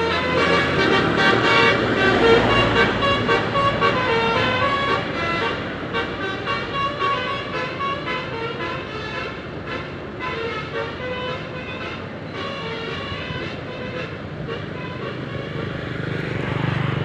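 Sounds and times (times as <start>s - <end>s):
multi-tone bus horn melody: 0.0s - 16.9s
road traffic noise: 0.0s - 17.0s.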